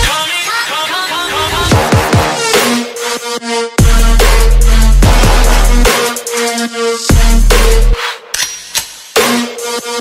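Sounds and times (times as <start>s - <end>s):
electronic hip-hop music: 0.0s - 10.0s.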